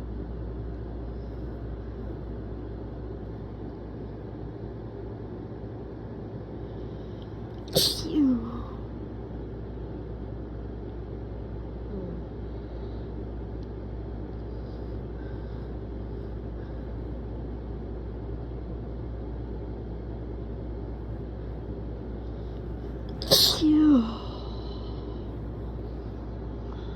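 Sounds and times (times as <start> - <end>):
steady low hum and hiss: 0.0 - 26.9
person sneezing: 7.7 - 8.6, 23.1 - 24.4.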